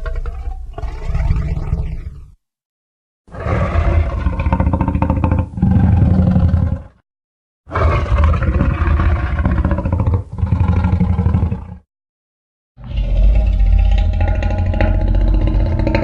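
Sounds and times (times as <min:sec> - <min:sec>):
monster roars and growls: 0:12.8 - 0:16.0.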